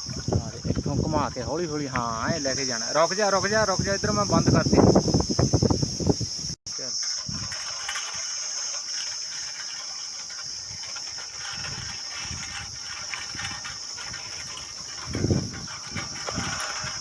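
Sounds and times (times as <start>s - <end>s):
insects chirring: 0.0s - 17.0s.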